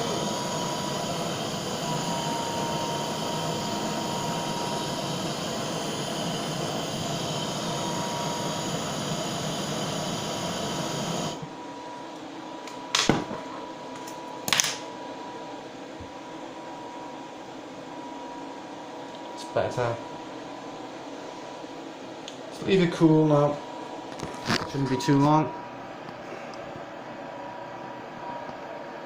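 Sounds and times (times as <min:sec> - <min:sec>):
blowtorch hissing: 0:00.0 - 0:11.6.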